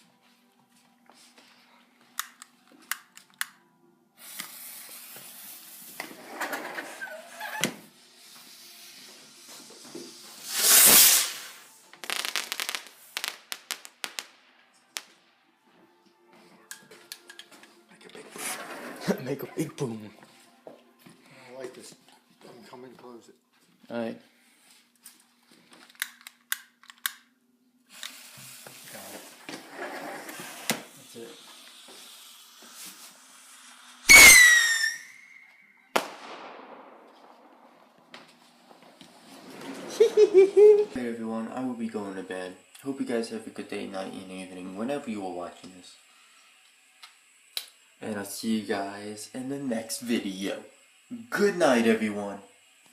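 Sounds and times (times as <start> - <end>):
firework launch whoosh: 4.2 - 7.1, 8.2 - 15.2, 28.1 - 40.4
firework crackling pops: 4.2 - 15.5, 27.9 - 41.2, 47.0 - 48.8.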